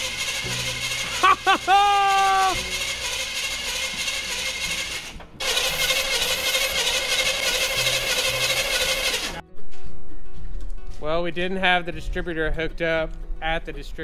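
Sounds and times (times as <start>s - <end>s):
starter cranking engine: 0.0s - 9.4s.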